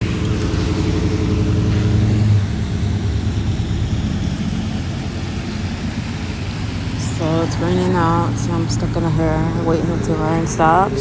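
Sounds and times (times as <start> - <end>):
vehicle engine humming: 0.0 - 11.0.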